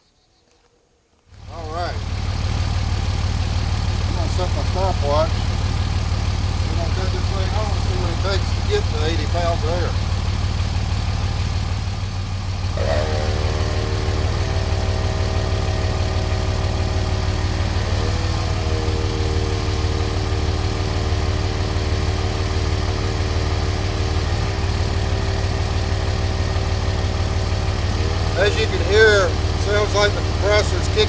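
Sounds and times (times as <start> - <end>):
diesel engine idling: 1.3 - 31.0
air compressor motor whine: 12.7 - 31.0.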